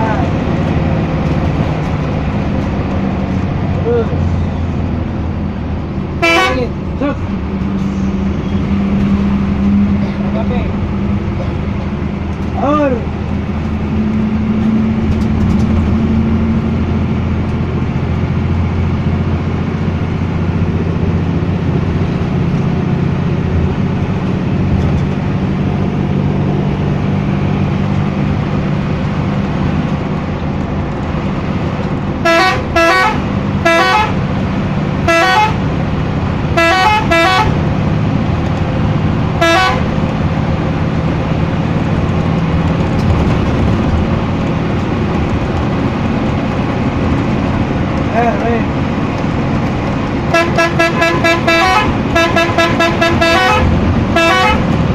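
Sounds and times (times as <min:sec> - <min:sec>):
bus engine droning: 0:00.0 - 0:54.9
multi-tone bus horn blasts: 0:06.2 - 0:06.7, 0:32.2 - 0:34.2, 0:35.0 - 0:35.7, 0:36.5 - 0:37.6, 0:39.4 - 0:40.0, 0:50.3 - 0:54.8.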